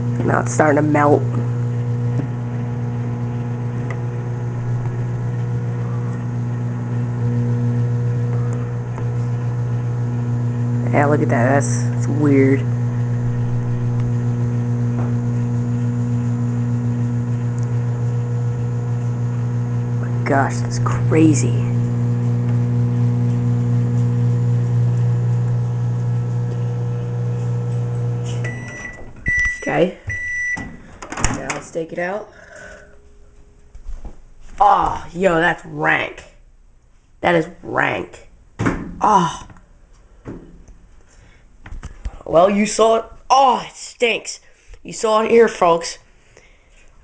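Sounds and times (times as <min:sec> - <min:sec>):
microwave oven humming: 0:00.0 - 0:31.5.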